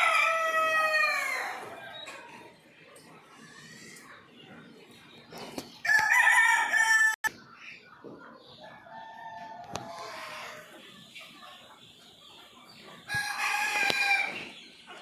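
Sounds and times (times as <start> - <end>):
rooster crowing: 0.0 - 1.6, 5.8 - 7.2.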